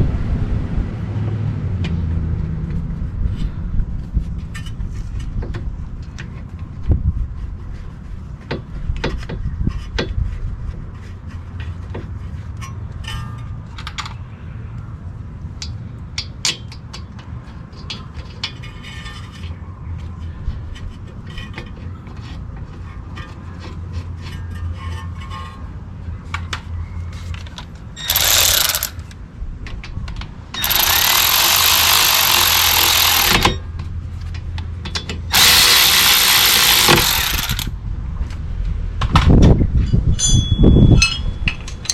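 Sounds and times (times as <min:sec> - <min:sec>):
metal tool clicks and clanks: 0:28.0 - 0:29.2, 0:30.5 - 0:33.6, 0:34.3 - 0:37.7.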